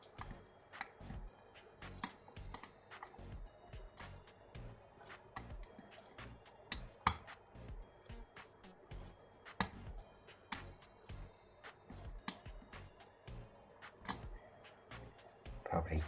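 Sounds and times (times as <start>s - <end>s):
lock pick clicking and scraping: 2.0s - 3.1s, 6.7s - 7.3s, 9.6s - 9.9s, 14.0s - 14.3s.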